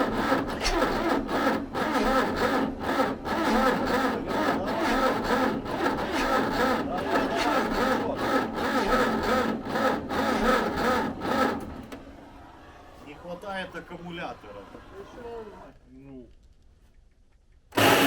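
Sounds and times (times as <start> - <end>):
electric starter cranking diesel engine: 0.0 - 12.8, 17.7 - 18.0.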